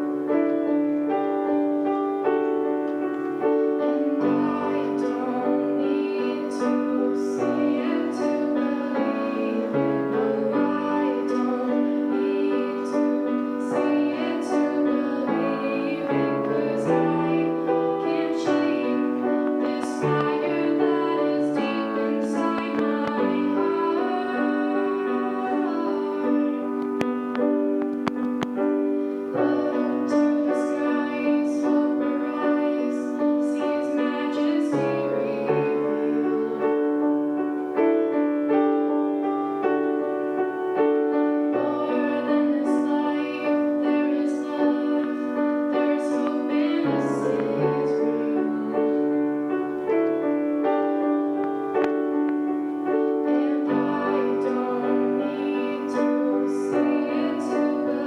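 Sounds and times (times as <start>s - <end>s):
piano playing worship song: 0.0s - 58.0s
woman singing: 3.9s - 27.0s, 29.3s - 37.1s, 41.4s - 49.4s, 53.0s - 58.0s.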